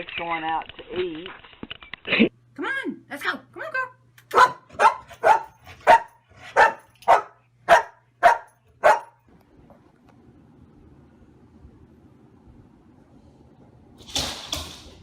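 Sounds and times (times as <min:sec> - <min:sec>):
dog barking: 0:04.3 - 0:09.2.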